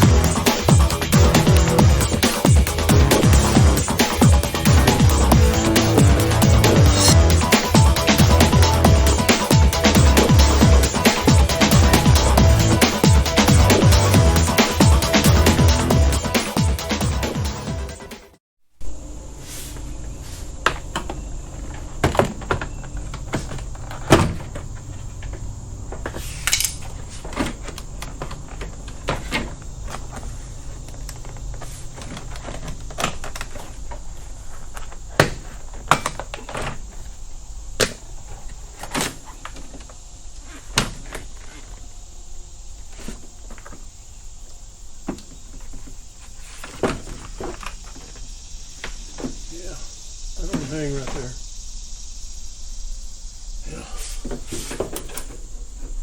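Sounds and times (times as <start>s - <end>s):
hand tools and metal parts clicking: 26.2s - 28.7s.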